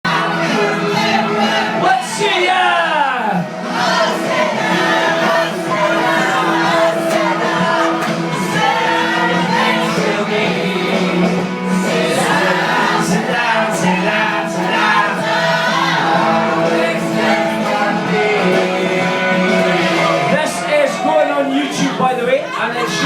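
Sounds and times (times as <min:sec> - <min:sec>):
music: 0:00.0 - 0:23.0
group of people singing: 0:00.1 - 0:23.0.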